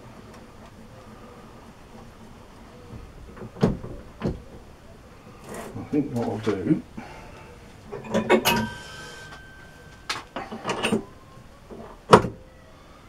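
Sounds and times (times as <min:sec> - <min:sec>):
metal tools knocking and clinking: 0:07.9 - 0:11.1
short metallic ring: 0:08.0 - 0:11.2.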